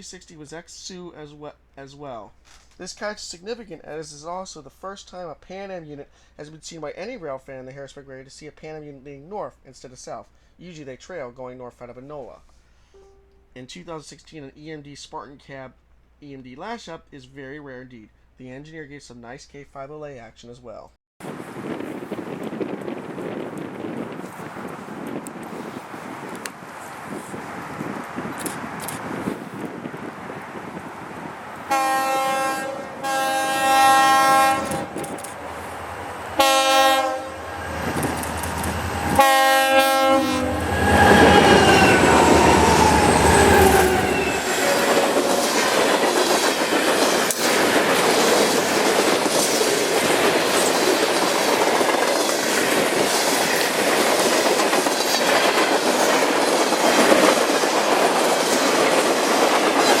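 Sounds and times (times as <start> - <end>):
locomotive horn: 31.6 - 46.3
train wheels clacking over rail joints: 33.7 - 36.5, 37.4 - 39.4, 40.3 - 60.0.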